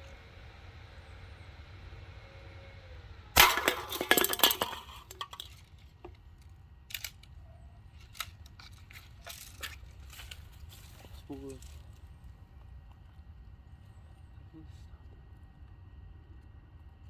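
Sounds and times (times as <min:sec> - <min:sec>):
aluminium cans clattering: 0:03.4 - 0:05.8
sharp crack: 0:03.4 - 0:07.4.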